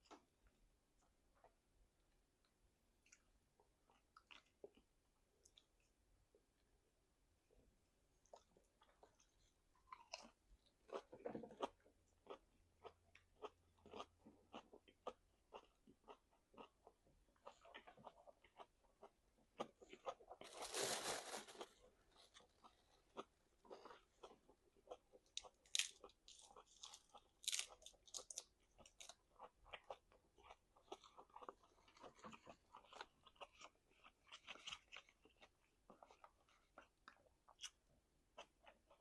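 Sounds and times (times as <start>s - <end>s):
person chewing meat: 8.2s - 20.4s, 22.3s - 39.0s.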